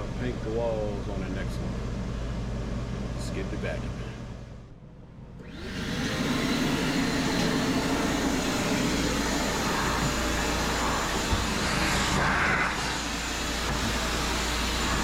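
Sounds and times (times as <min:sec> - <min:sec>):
shop vacuum motor whirring: 0:05.4 - 0:15.0.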